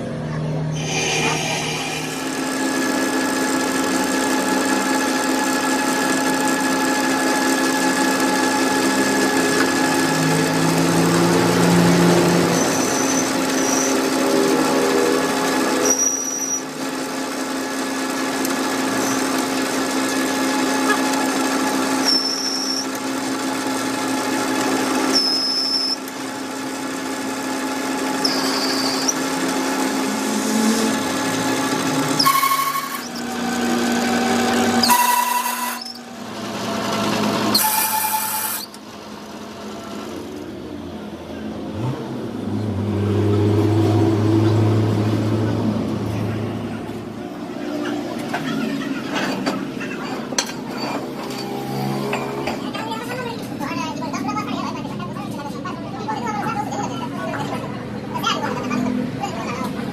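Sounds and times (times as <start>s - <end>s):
metalworking machine humming: 0.0s - 56.6s
metal grinding: 0.7s - 4.8s, 28.0s - 38.8s, 47.8s - 53.0s
high squeals: 12.5s - 14.0s, 28.2s - 29.3s, 32.2s - 33.4s.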